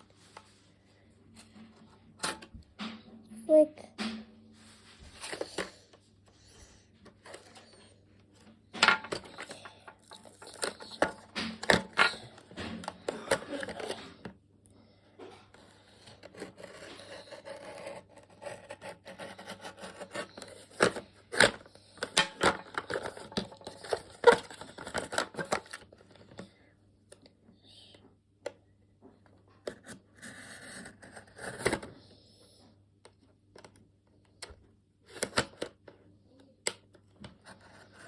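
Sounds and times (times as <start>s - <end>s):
tool scraping toy packaging: 8.9s - 14.3s, 15.5s - 26.1s, 29.7s - 32.0s, 37.4s - 38.0s.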